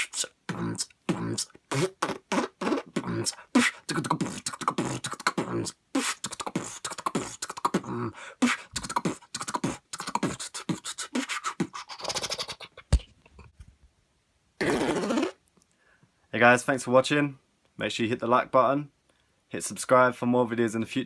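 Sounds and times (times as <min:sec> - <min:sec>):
mouth beatboxing: 0:00.0 - 0:13.2, 0:14.6 - 0:15.4.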